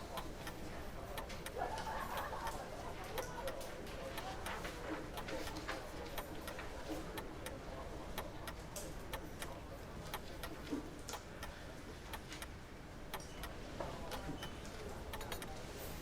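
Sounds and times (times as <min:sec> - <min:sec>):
murmur of voices: 0:00.0 - 0:16.0
sharp clicks and clinks: 0:13.1 - 0:15.5.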